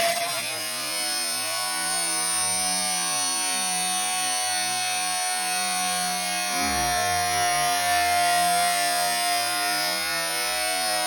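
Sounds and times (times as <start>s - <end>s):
warbling slowed sander drone: 6.5s - 8.8s
sander rushing noise: 6.6s - 8.6s.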